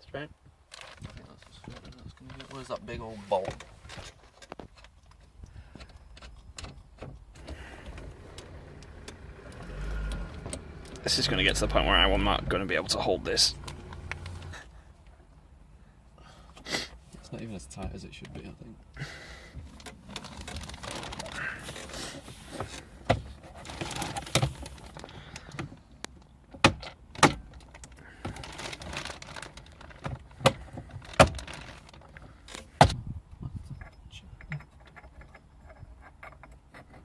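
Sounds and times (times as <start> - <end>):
metal tools clinking and rattling: 33.7 - 37.0.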